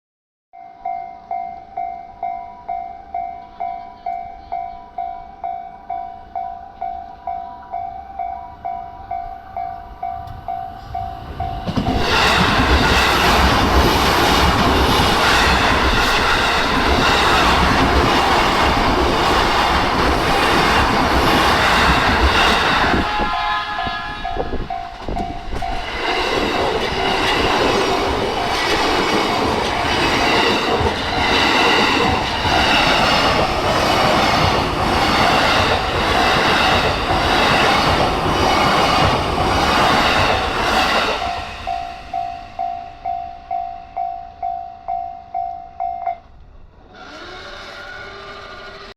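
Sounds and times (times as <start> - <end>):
level crossing warning bell: 0.5 - 12.0, 21.7 - 32.4, 41.0 - 46.4
train wheels clattering on rails: 10.2 - 42.8.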